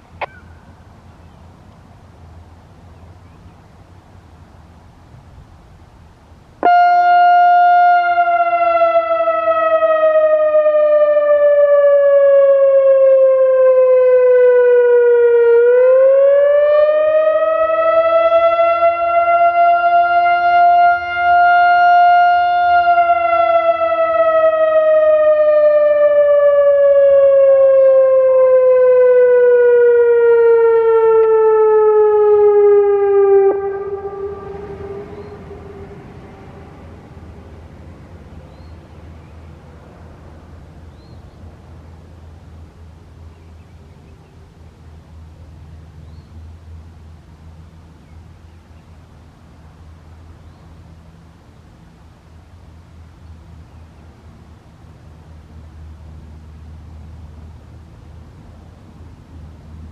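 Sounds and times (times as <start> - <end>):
wavering warning siren: 6.6 - 41.2.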